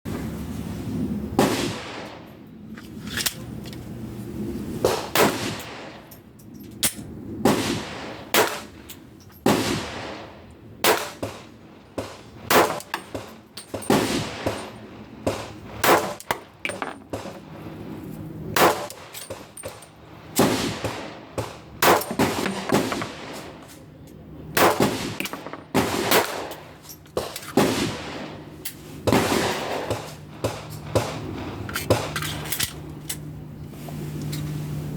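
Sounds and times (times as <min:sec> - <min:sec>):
pistol shots: 0:09.4 - 0:17.4, 0:18.6 - 0:19.4, 0:20.4 - 0:23.6, 0:24.6 - 0:28.3, 0:29.0 - 0:32.2.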